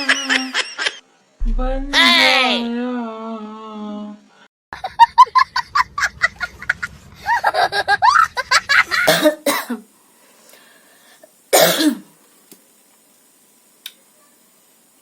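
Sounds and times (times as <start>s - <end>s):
woman coughing: 9.1s - 9.8s, 11.6s - 12.1s.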